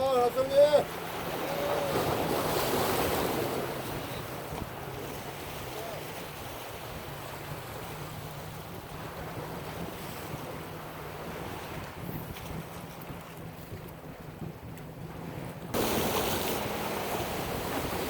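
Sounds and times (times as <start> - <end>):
steady wash of water: 0.0 - 18.0
wind buffeting microphone: 0.0 - 18.0
ocean wave surging in: 0.3 - 4.2, 15.7 - 18.0.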